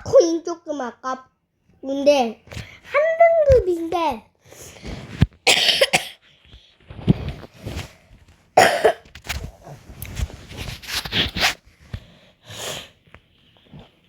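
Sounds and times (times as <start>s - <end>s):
person coughing: 5.5s - 6.2s, 8.6s - 9.0s.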